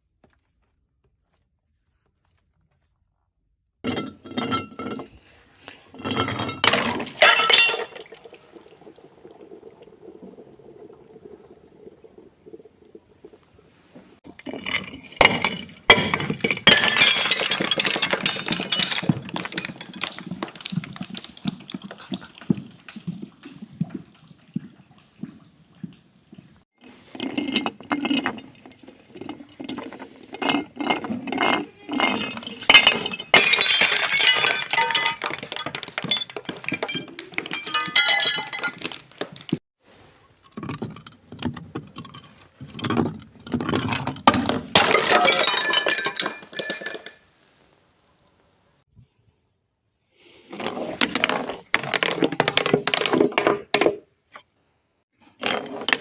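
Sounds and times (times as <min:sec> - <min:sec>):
glass bottles crushing: 0:03.8 - 0:10.8, 0:14.2 - 0:22.8, 0:27.0 - 0:39.6, 0:42.0 - 0:47.3, 0:50.5 - 0:54.0, 0:55.3 - 0:56.0
glass shards tinkling: 0:36.1 - 0:39.6.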